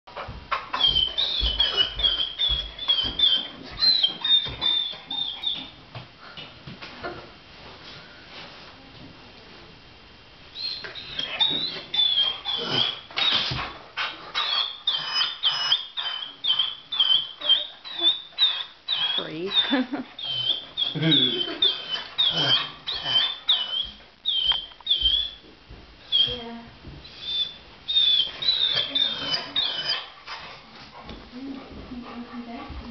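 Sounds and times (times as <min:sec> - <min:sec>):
dog yipping and whining: 0:00.5 - 0:05.8, 0:10.6 - 0:13.6, 0:14.3 - 0:25.4, 0:27.1 - 0:30.2.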